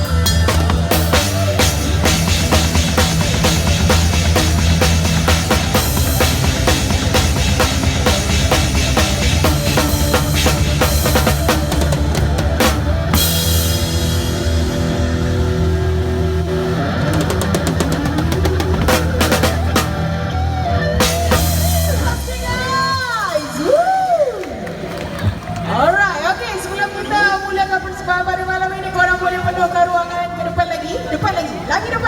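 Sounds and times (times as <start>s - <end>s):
live rock band playing: 0.0s - 23.7s.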